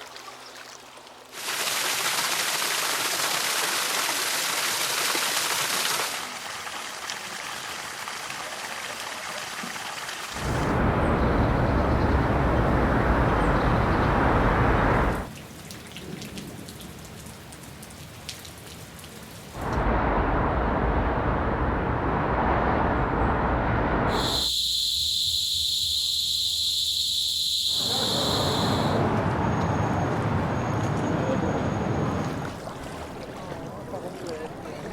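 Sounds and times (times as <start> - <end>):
light rain patter and drips: 0.0 - 23.7, 29.0 - 34.9
heavy rain: 10.3 - 24.5, 27.7 - 32.8
high-pitched buzz: 23.4 - 29.1.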